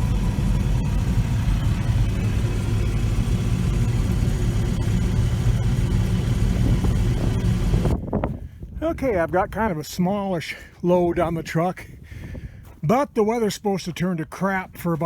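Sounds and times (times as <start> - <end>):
vehicle engine running: 0.0 - 8.5.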